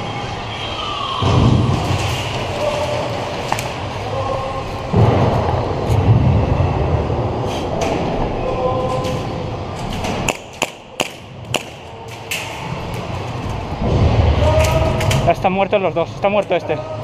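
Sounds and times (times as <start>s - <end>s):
steady rumbling noise: 0.0s - 17.0s
airsoft gun shots: 10.2s - 11.9s.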